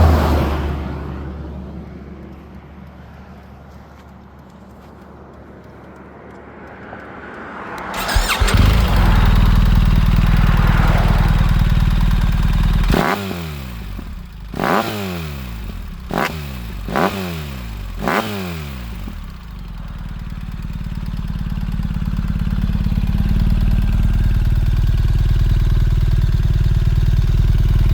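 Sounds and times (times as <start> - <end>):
motorcycle engine revving: 6.3 - 27.9.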